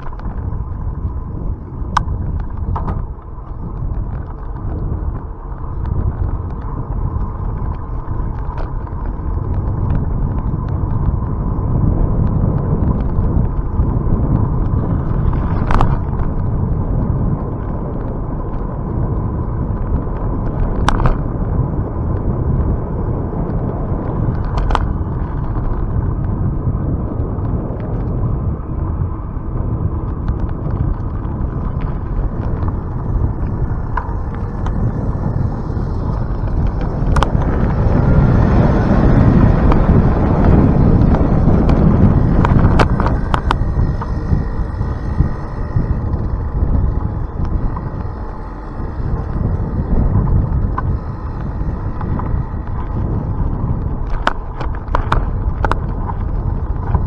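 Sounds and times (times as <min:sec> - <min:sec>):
road rumble: 0:00.0 - 0:57.0
wind buffeting microphone: 0:00.0 - 0:57.0
sharp clicks: 0:30.2 - 0:57.0.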